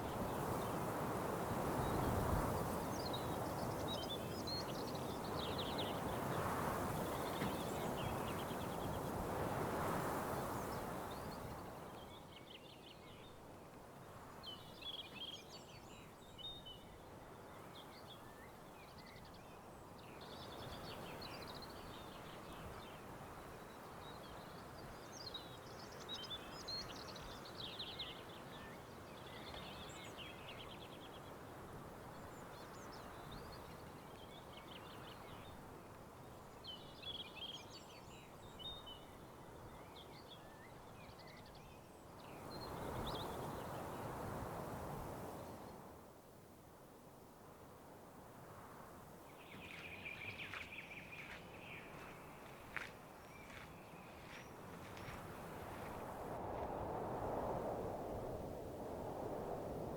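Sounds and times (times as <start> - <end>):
soft rushing forest ambience: 0.0 - 59.9
songbirds singing: 1.7 - 9.2, 14.2 - 44.2, 49.2 - 56.1.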